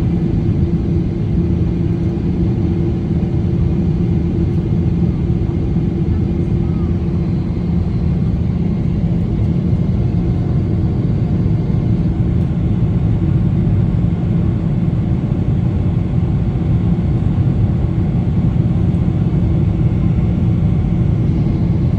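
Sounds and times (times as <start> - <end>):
airplane engine and airflow rumble: 0.0 - 21.9
low cabin hum: 5.3 - 21.9.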